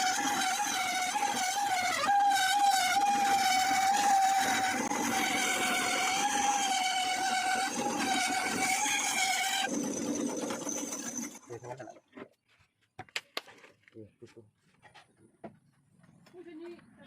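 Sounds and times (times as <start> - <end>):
drill spinning grinding stone: 0.0 - 12.0.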